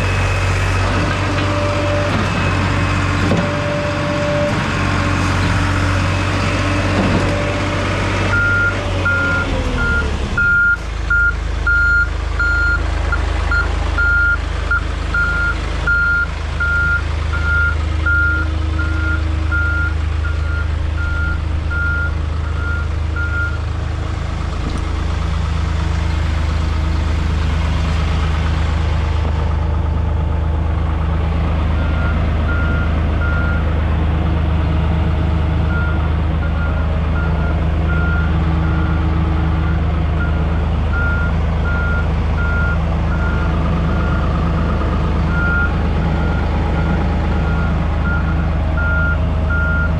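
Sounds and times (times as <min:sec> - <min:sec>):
skid steer engine running: 0:00.0 - 0:49.9.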